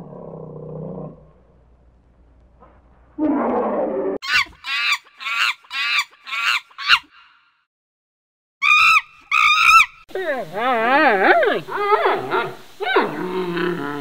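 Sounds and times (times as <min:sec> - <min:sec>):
animal calling: 0:03.2 - 0:07.4, 0:08.6 - 0:14.0.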